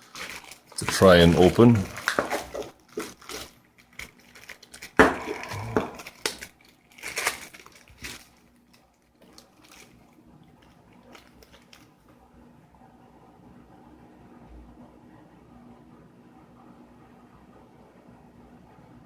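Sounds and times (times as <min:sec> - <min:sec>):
plastic bag crinkling: 0:00.0 - 0:12.0.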